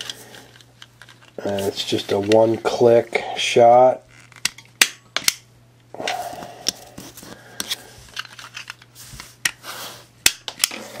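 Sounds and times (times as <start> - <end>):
plastic and cardboard rustling: 0.0 - 3.0.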